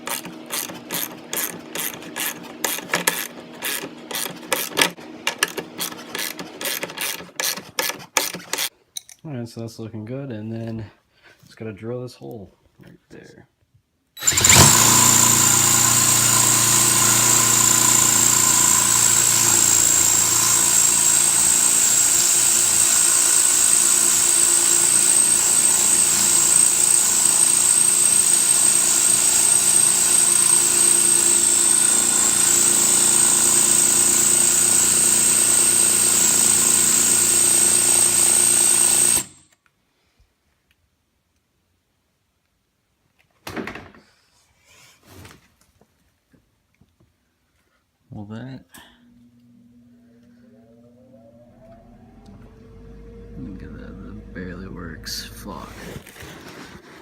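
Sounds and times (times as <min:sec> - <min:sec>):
power drill whining: 0:00.0 - 0:08.7, 0:14.2 - 0:39.5, 0:49.1 - 0:56.2.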